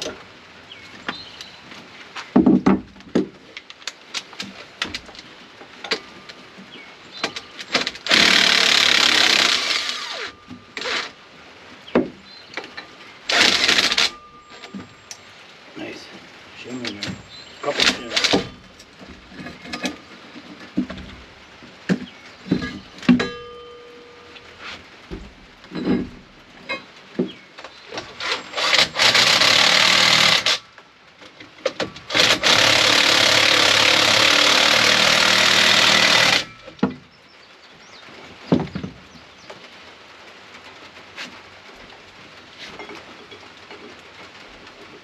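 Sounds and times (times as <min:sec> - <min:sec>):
metal tools clinking: 0:22.5 - 0:24.6.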